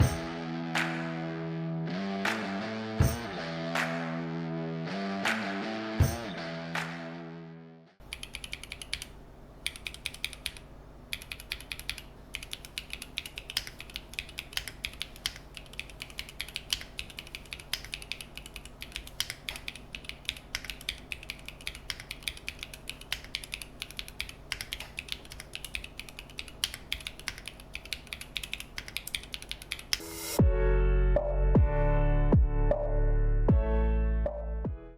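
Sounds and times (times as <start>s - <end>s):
typing on mechanical keyboard: 8.0s - 30.0s.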